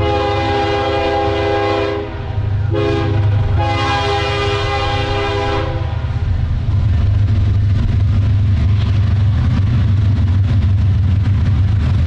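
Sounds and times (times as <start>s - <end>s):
locomotive air horn blasts: 0.0s - 6.1s
diesel engines rumbling: 0.0s - 12.0s.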